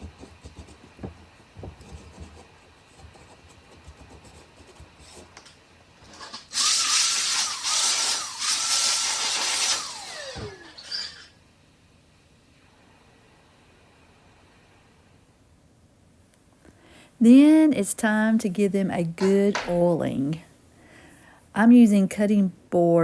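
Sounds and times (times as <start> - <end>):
electric power tool whining: 6.2 - 11.4.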